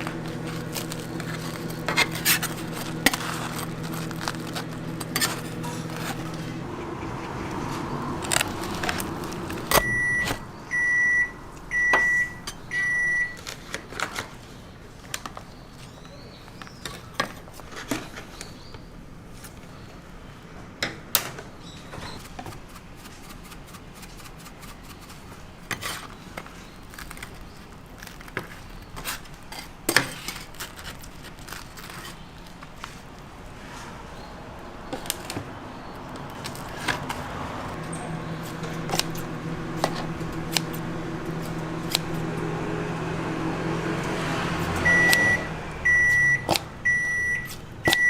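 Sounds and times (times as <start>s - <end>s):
kitchen appliance beeping: 0.0s - 6.6s, 7.7s - 13.6s, 37.8s - 48.0s.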